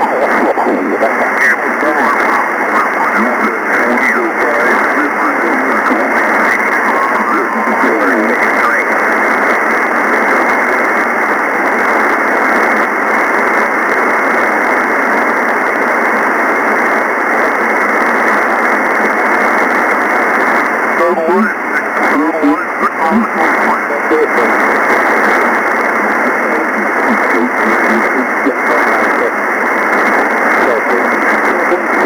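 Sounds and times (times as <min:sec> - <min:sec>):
faint warbling radio signal: 0:00.0 - 0:09.0, 0:21.0 - 0:29.4, 0:30.2 - 0:32.0
receiver static hiss: 0:00.0 - 0:32.0.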